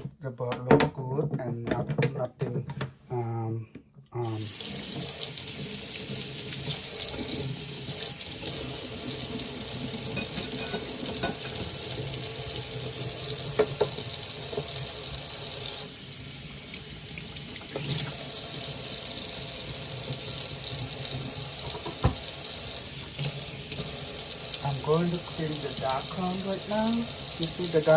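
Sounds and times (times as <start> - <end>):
tap water running into sink: 4.4 - 27.9
bowl knocking in sink: 10.2 - 11.8, 21.6 - 22.3.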